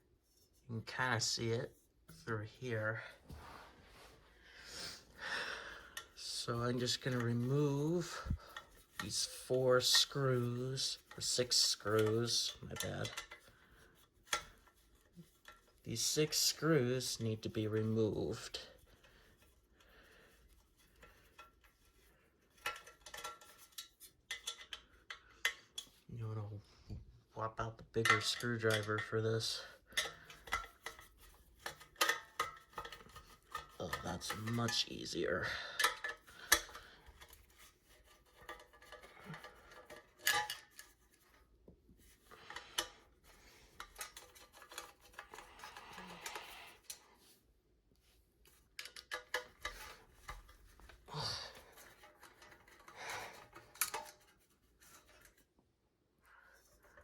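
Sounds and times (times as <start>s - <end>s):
screwdriver metallic clicks and scrapes: 6.0s - 13.6s, 14.2s - 19.6s, 20.3s - 26.0s, 28.0s - 41.4s, 42.0s - 47.1s, 48.4s - 55.5s.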